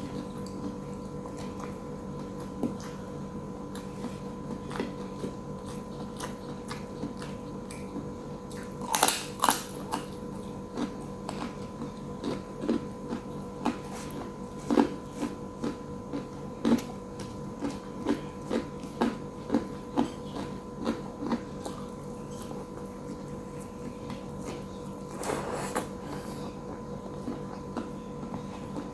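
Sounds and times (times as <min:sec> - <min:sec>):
chewing: 0:00.0 - 0:28.9
faint electrical hum: 0:00.0 - 0:28.9
crunchy bite: 0:08.5 - 0:22.5.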